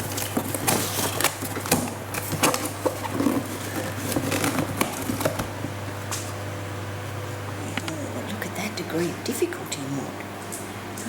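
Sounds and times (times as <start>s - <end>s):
cardboard boxes rustling and scraping: 0.0s - 6.0s
steady low hum: 0.0s - 11.0s.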